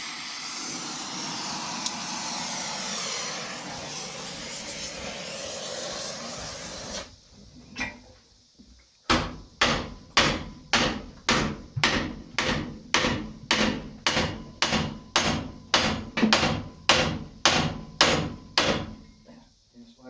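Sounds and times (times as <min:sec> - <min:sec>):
hammer striking steel on anvil: 0:09.1 - 0:19.1.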